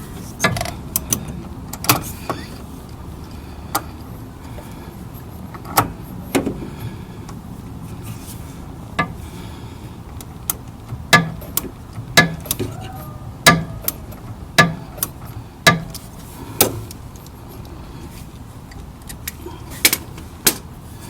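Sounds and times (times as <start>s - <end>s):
sharp metallic knocks: 11.1s - 11.5s, 12.2s - 16.0s.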